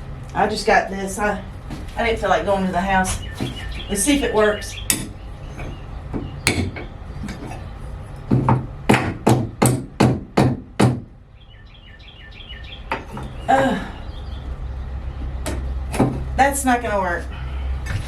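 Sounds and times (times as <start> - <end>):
hammer strikes: 8.3 - 11.1.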